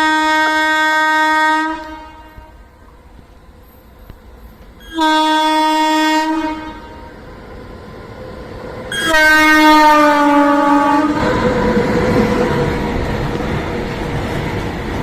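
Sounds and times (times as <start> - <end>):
train horn blast: 0.0 - 2.7, 4.8 - 7.2, 8.9 - 11.5
train rumbling past: 1.6 - 15.0.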